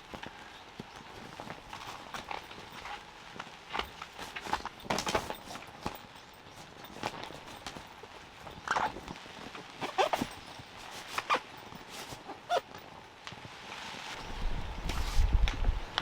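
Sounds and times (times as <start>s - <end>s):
short squeaky sounds: 9.8s - 12.6s.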